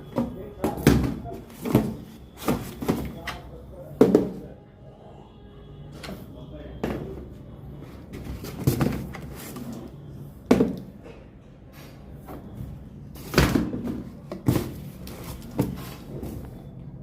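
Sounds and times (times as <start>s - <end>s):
packaging handling noise: 0.0s - 3.5s, 8.0s - 11.0s, 13.2s - 16.6s.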